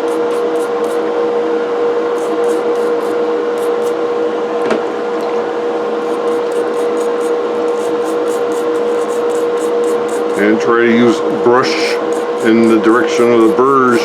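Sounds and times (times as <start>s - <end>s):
brush scrubbing metal: 0.0s - 1.0s, 2.2s - 4.0s, 6.0s - 10.5s, 11.6s - 14.0s
machine hum: 0.0s - 14.0s.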